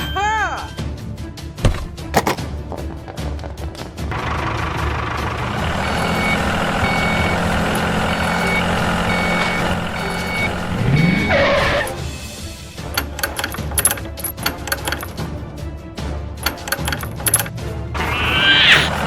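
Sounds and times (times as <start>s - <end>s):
construction vehicle engine running: 1.6s - 15.6s, 16.4s - 19.0s
reversing alarm beeps: 5.7s - 7.5s, 8.4s - 11.8s.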